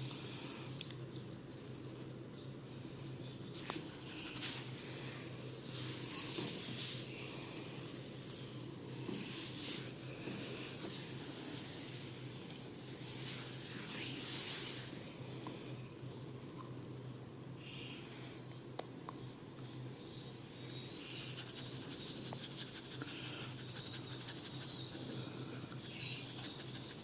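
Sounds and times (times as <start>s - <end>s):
hands scratching through hair: 3.6s - 4.7s, 21.2s - 27.0s.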